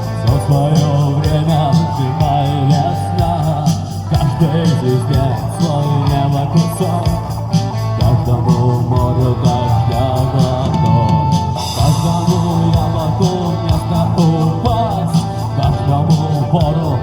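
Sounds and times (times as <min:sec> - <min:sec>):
guitar rock music: 0:00.0 - 0:17.0.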